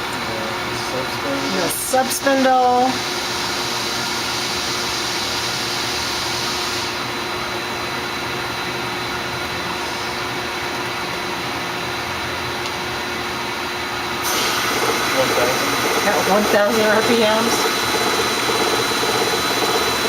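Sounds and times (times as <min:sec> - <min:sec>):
lathe spindle whirring hum: 0:13.0 - 0:20.0.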